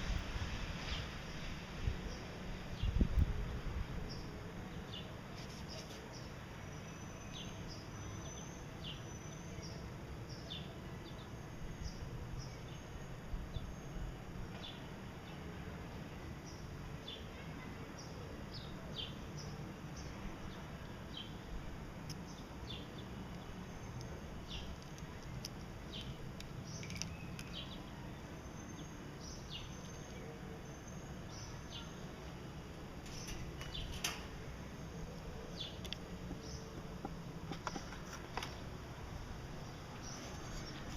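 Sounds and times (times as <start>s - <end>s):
steady low hum: 17.8s - 40.9s.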